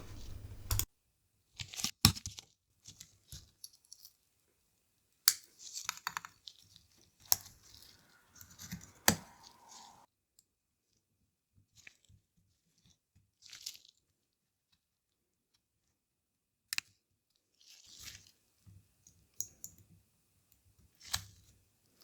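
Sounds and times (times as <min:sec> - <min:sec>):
light scraping and rustling: 0:00.0 - 0:00.9, 0:07.3 - 0:10.1.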